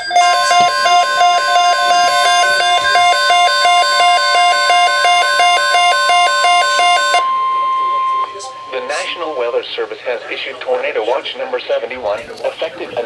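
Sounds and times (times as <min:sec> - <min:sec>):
two-pitch alarm beeping: 0:00.0 - 0:10.3
steady warning alarm tone: 0:00.0 - 0:11.0.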